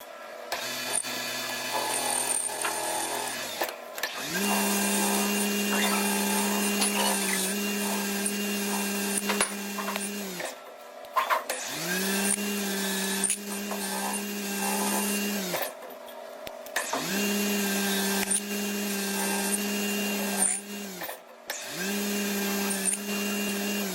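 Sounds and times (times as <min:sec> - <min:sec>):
lathe spindle whine: 0:00.6 - 0:10.5.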